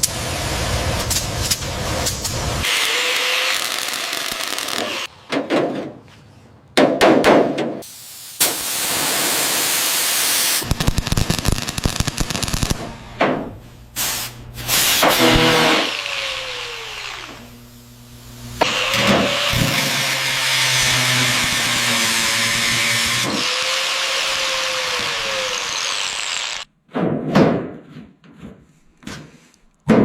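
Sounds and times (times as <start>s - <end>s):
power tool spinning down: 15.1s - 17.6s, 18.6s - 26.7s.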